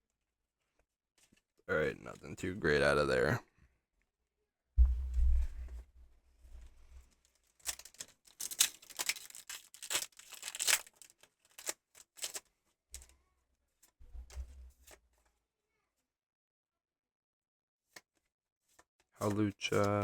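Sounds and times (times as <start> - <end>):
foil wrapper crinkling and tearing: 7.2 - 13.1.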